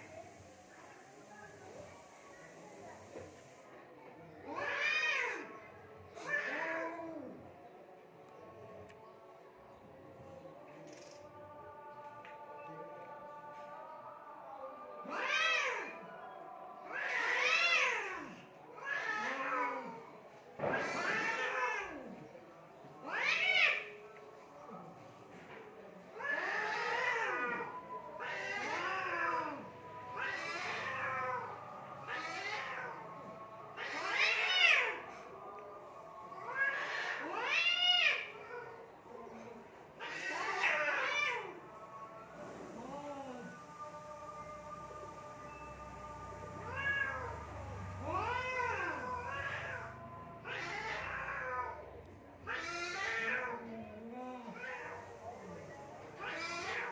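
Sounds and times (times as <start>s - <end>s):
cats yowling in a fight: 4.4s - 7.6s, 15.0s - 22.4s, 23.0s - 24.0s, 26.0s - 42.1s, 46.0s - 56.9s.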